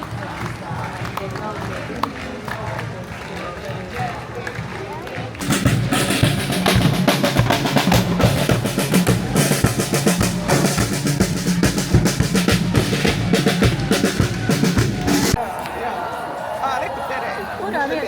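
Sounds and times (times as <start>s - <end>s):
bass line: 5.4s - 15.4s
drum kit playing a busy beat: 5.4s - 15.4s.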